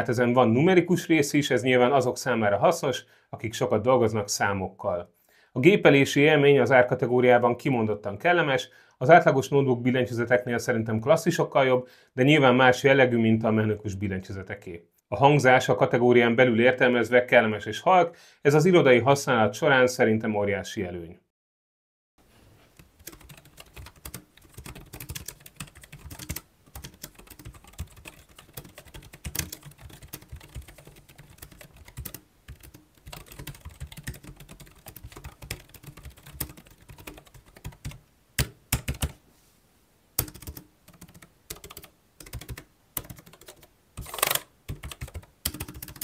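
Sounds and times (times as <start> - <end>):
keyboard typing: 22.8 - 39.2, 40.2 - 46.0.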